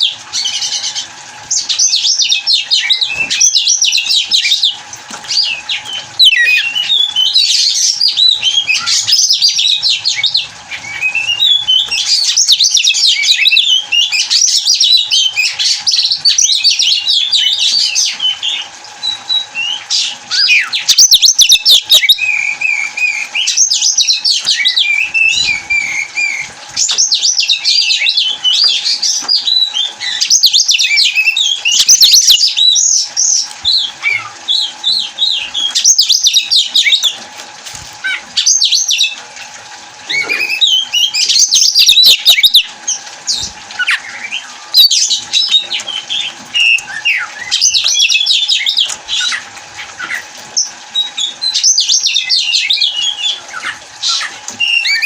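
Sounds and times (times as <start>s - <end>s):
bird singing whistled notes: 5.4s - 37.1s.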